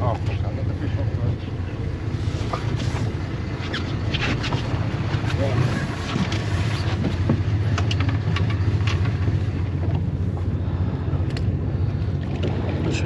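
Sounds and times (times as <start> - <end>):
boat engine low hum: 0.0 - 13.0
light clicks and knocks: 6.1 - 10.5.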